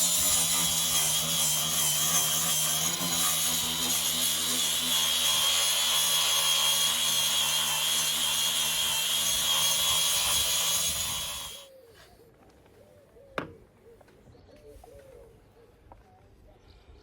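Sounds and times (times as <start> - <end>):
angle grinder whining: 0.0 - 11.7.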